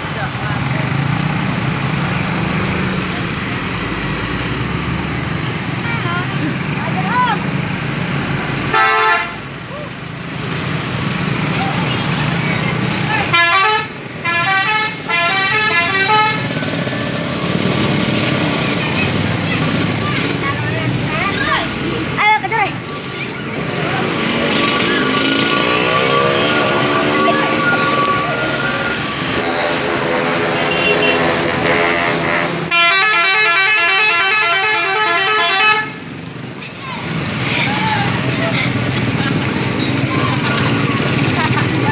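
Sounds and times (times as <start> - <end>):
engine and traffic noise: 0.0 - 41.9
vehicle noise: 0.0 - 41.9
multi-tone bus air horn: 8.7 - 9.4, 13.2 - 16.5, 26.9 - 36.1.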